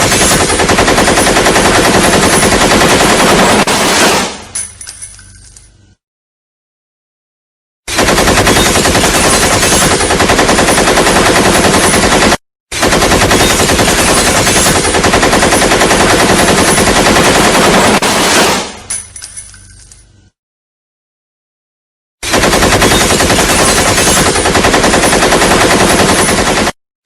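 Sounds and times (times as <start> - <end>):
assault rifle automatic fire: 0.0 - 4.4, 7.9 - 18.7, 22.2 - 26.8.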